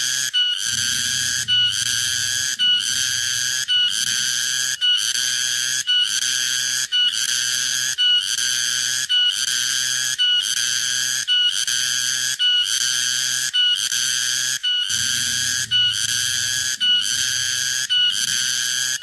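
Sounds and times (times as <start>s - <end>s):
shrill buzzing call: 0.0s - 5.9s, 14.9s - 19.0s.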